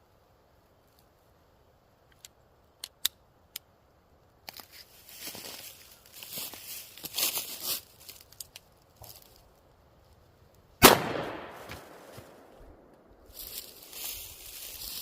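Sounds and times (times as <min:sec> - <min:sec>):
rustling handling noise: 0:04.5 - 0:10.2, 0:11.6 - 0:15.0
gunshot with echo: 0:10.8 - 0:12.4.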